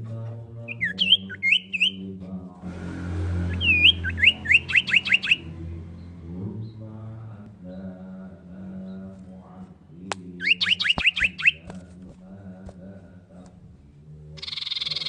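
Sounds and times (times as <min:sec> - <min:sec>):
low steady hum: 0:00.0 - 0:14.4
bird whistling song: 0:00.6 - 0:02.0, 0:03.4 - 0:06.2, 0:10.4 - 0:11.7, 0:14.4 - 0:15.0.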